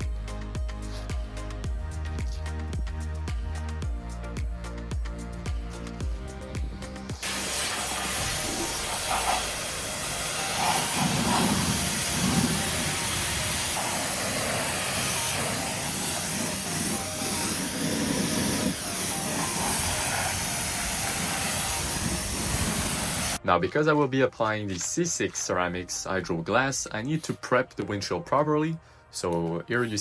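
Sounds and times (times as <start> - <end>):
water spraying on car: 7.2 - 23.4.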